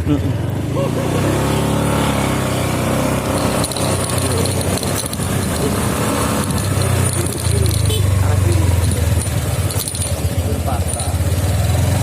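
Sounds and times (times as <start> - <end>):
scooter engine running: 0.0 - 12.0
light metallic jingling rattle: 3.2 - 11.4.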